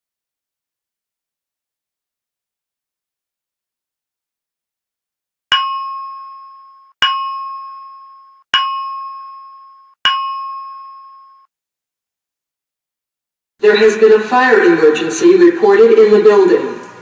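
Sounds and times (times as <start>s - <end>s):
bell-like alarm chime: 5.5s - 11.5s.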